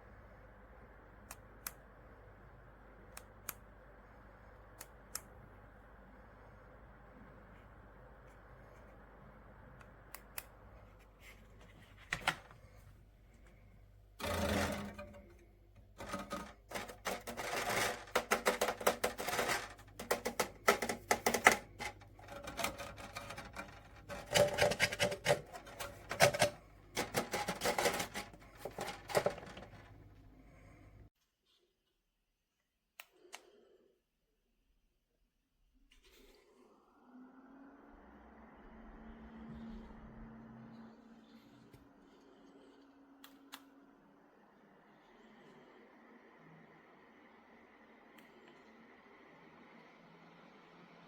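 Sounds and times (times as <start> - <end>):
hard objects clicking and clattering: 14.2 - 30.0.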